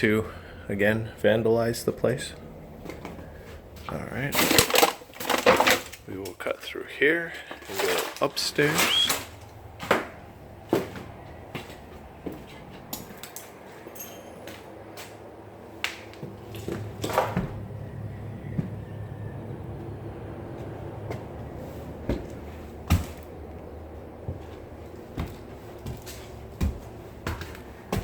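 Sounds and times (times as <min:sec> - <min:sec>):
steady low hum: 0:00.0 - 0:28.0
footsteps climbing stairs: 0:07.3 - 0:15.2, 0:19.7 - 0:28.0.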